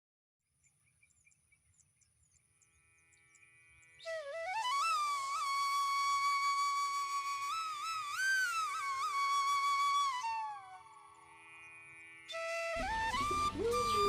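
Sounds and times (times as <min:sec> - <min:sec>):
flute note sliding upward: 0:04.1 - 0:14.0.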